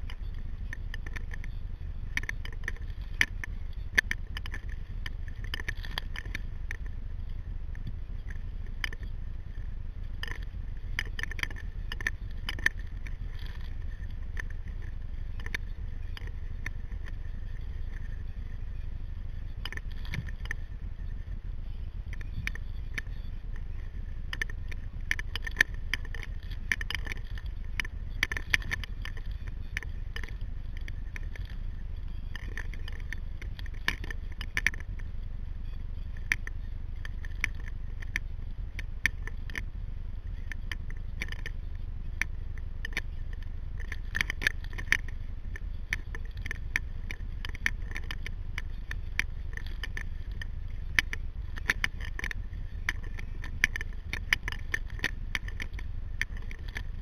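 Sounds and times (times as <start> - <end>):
low rumble: 0.0 - 57.0
small clicks and rattles: 0.0 - 57.0.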